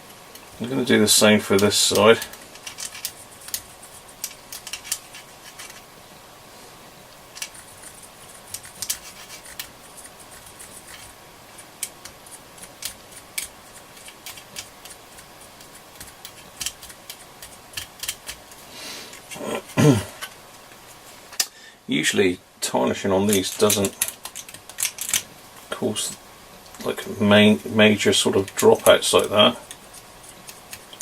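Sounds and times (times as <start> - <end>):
fibreglass pencil scratching metal: 1.2 - 5.8, 7.3 - 19.8.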